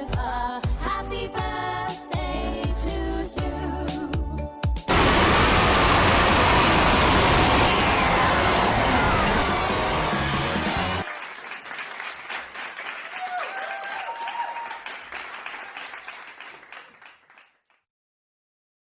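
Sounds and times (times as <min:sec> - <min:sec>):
high shouts: 0:04.9 - 0:11.0, 0:13.1 - 0:14.8
children cheering and clapping: 0:04.9 - 0:17.6.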